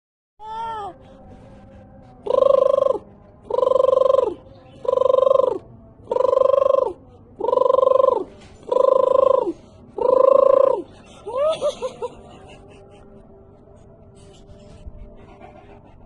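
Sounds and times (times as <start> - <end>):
bird calling: 2.3 - 11.9.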